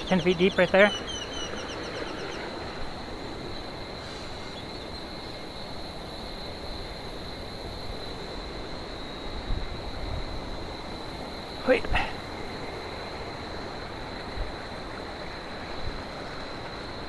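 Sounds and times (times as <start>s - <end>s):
high-pitched insect drone: 0.0s - 14.2s.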